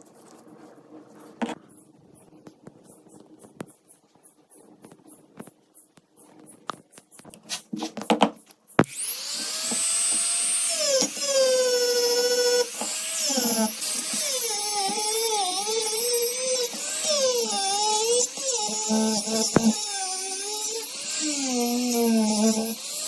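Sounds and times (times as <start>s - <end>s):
rotary tool whining: 8.8s - 23.0s.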